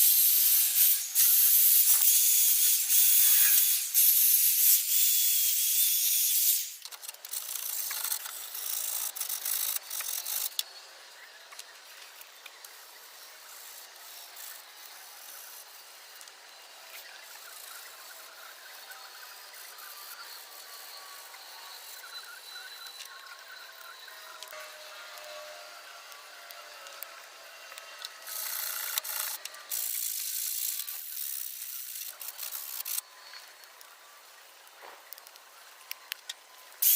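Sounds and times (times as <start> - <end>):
spray hiss: 0.0 - 6.8
small clicks: 0.6 - 10.8.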